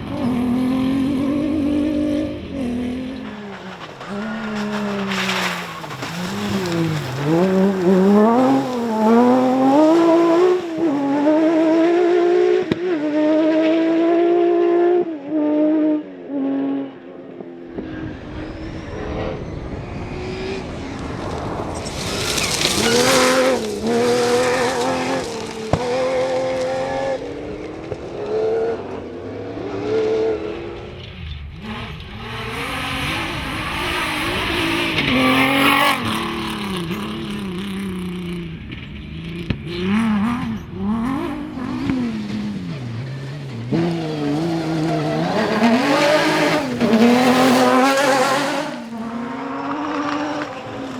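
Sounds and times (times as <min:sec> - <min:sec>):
rally car engines revving: 0:00.0 - 0:50.9
tyre noise rushing: 0:02.4 - 0:11.0, 0:17.8 - 0:28.2, 0:41.9 - 0:49.2.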